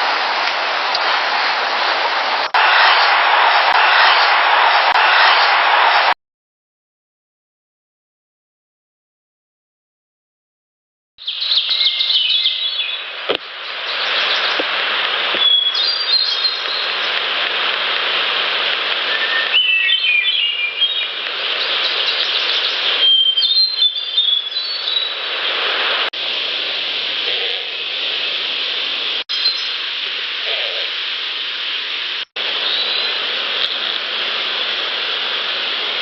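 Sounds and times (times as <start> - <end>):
loud hiss: 11.3 - 19.5, 24.6 - 36.0.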